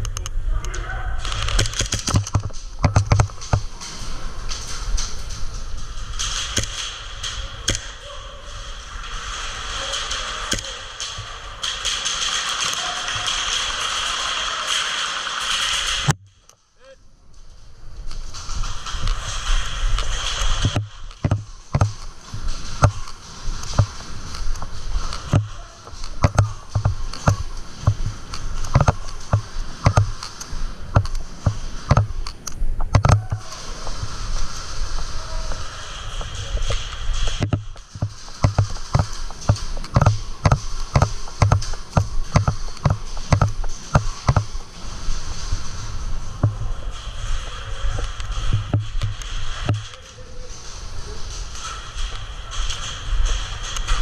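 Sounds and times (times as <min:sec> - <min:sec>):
gear clattering: 0:01.2 - 0:16.6, 0:17.3 - 0:54.0
hiss: 0:03.8 - 0:16.1, 0:18.4 - 0:54.0
heavy footsteps: 0:17.4 - 0:50.0.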